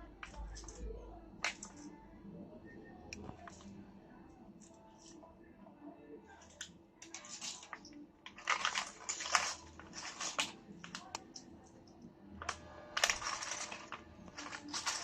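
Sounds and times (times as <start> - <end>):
rustling and crinkling: 6.4 - 11.6, 12.4 - 15.0.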